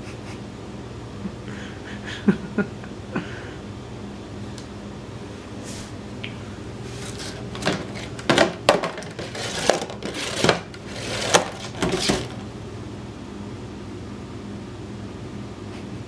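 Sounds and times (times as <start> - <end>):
steady low hum: 0.0 - 16.0
cardboard box knocking and scraping: 7.6 - 12.4.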